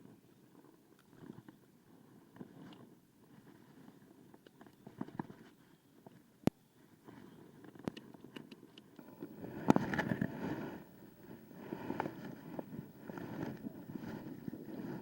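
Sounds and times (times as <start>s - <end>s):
rush of noise: 9.0s - 15.0s.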